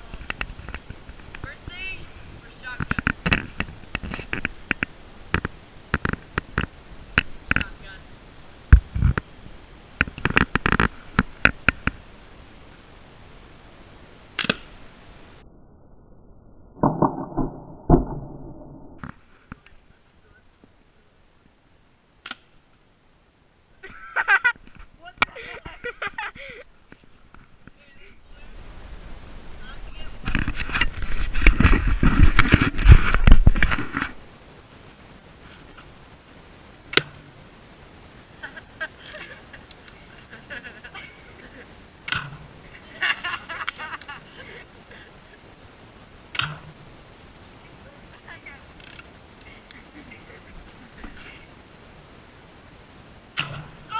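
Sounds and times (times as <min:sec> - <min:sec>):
sharp crack: 0:14.3 - 0:14.8, 0:15.7 - 0:19.8, 0:22.2 - 0:22.6, 0:36.9 - 0:37.3, 0:46.3 - 0:46.8, 0:53.3 - 0:53.9
pellet gun crack: 0:14.4 - 0:14.7
sharp clicks: 0:14.4 - 0:14.7, 0:22.2 - 0:22.5
low rumble: 0:14.8 - 0:19.2
muffled bangs: 0:16.8 - 0:19.2.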